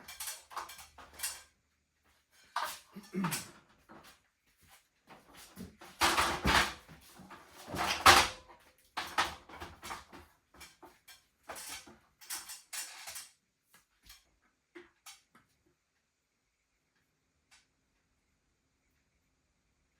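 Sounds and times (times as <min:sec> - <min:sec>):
cable rustling and scraping: 0:00.0 - 0:15.3.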